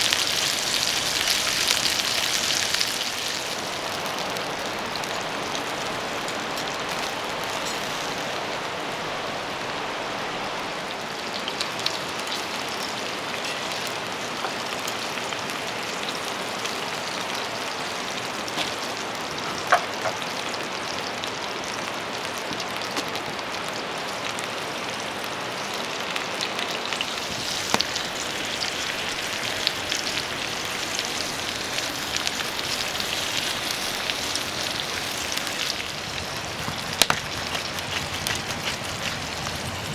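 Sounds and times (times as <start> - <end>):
steady rain falling: 0.0 - 39.9
raindrops tapping: 27.0 - 39.9.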